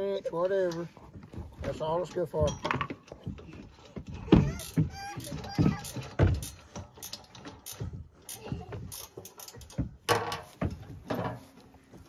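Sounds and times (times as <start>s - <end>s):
metal parts clanking: 1.7s - 11.5s
ratchet wrench clicking: 4.4s - 9.8s.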